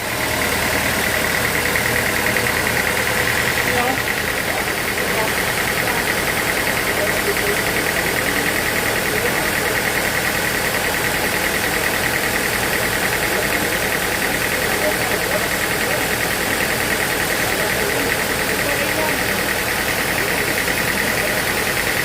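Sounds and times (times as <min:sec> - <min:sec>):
sawmill machinery pulsing hum: 0:00.0 - 0:22.0.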